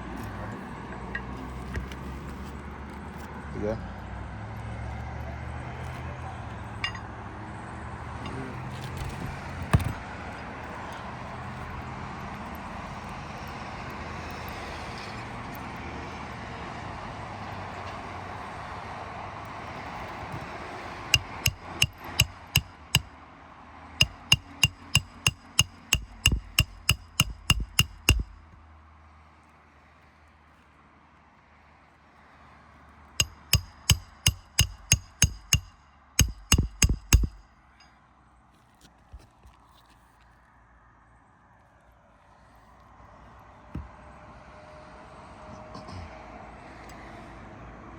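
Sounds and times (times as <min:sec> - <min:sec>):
hammer striking nails: 0:21.2 - 0:23.1, 0:24.0 - 0:28.6, 0:33.2 - 0:37.5.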